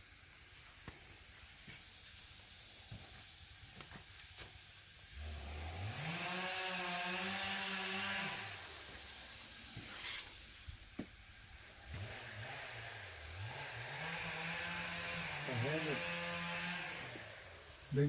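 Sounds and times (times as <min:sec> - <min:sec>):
engine revving: 0:05.1 - 0:09.8, 0:11.6 - 0:18.0
short hiss: 0:08.6 - 0:10.9.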